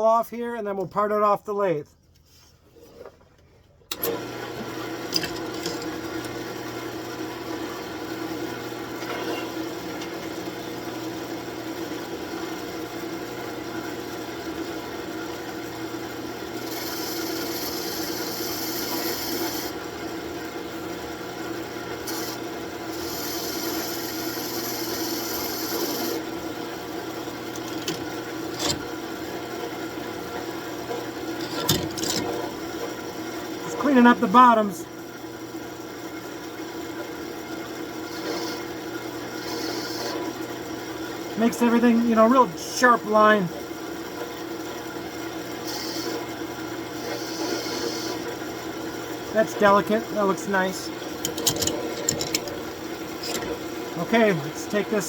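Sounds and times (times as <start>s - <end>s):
wood lathe humming: 4.0s - 30.3s, 37.8s - 40.4s, 45.4s - 55.0s
turning tool cutting wood: 16.5s - 20.0s, 21.9s - 26.4s, 27.3s - 29.2s, 37.9s - 40.3s, 45.6s - 46.3s, 46.9s - 48.4s.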